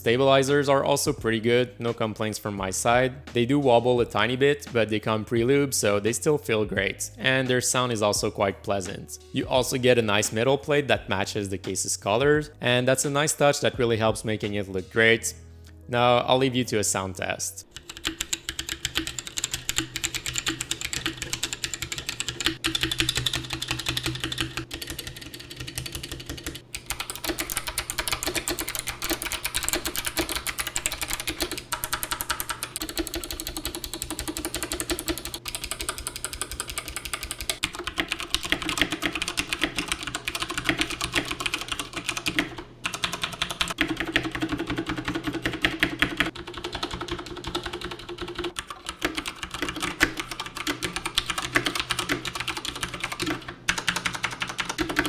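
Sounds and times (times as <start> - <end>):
fast typing on mechanical keyboard: 17.7 - 55.0.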